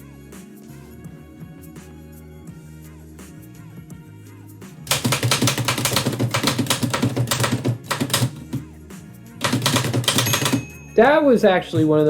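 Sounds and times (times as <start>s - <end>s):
quiet background music: 0.0s - 12.0s
manual typewriter key strikes: 4.9s - 8.7s, 9.4s - 10.8s.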